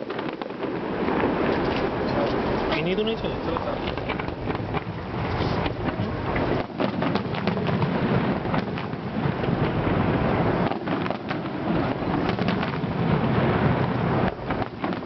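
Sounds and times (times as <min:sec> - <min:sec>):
fireworks bangs and crackles: 0:00.0 - 0:15.0
low rumble: 0:07.6 - 0:10.7.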